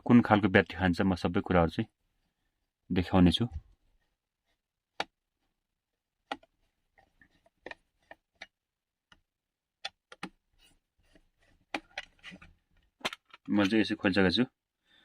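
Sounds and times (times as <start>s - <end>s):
plastic clicks and taps: 4.9s - 5.2s, 6.2s - 6.6s, 7.6s - 10.4s.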